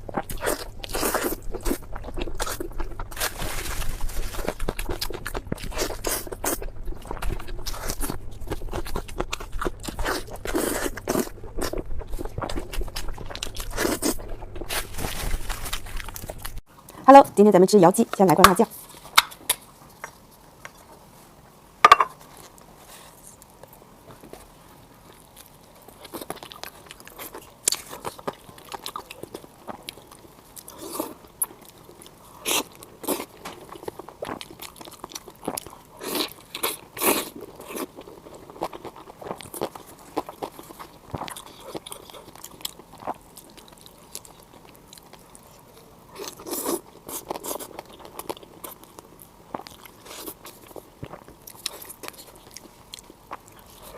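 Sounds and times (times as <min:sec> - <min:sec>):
person crunching and chewing: 0:00.0 - 0:16.9, 0:25.0 - 0:53.9.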